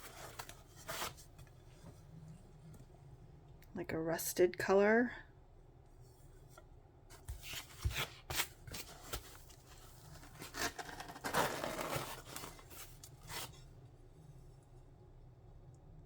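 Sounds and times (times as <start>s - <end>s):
packaging rustle: 7.4s - 13.6s.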